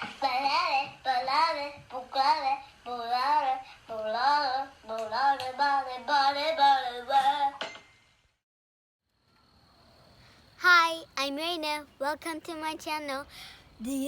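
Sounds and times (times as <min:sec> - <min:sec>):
high voice singing: 0:13.8 - 0:14.0.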